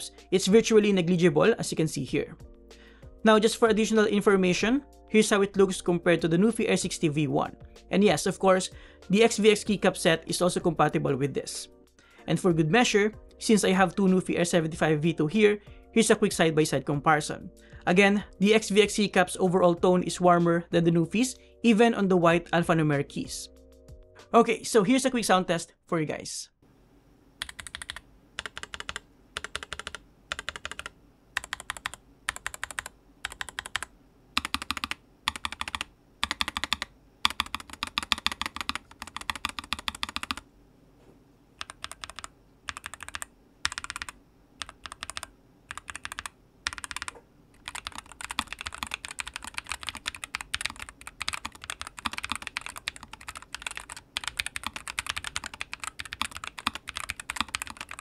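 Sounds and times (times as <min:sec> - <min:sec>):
mechanical keyboard typing: 0:27.4 - 0:40.4, 0:41.6 - 0:58.0.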